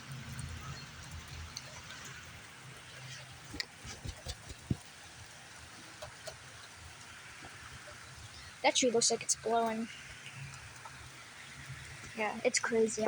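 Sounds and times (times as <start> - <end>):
wind rumble: 0.0 - 5.8
heavy rain hissing: 0.0 - 13.0.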